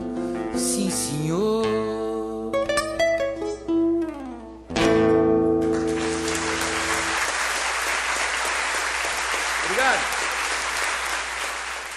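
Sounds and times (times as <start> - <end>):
audience applause: 5.7 - 11.9.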